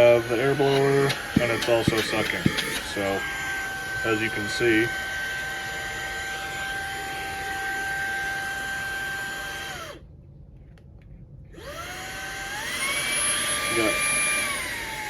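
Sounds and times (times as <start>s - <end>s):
high-speed motor whine: 0.0s - 10.0s, 11.6s - 15.0s
small clicks: 0.7s - 3.0s.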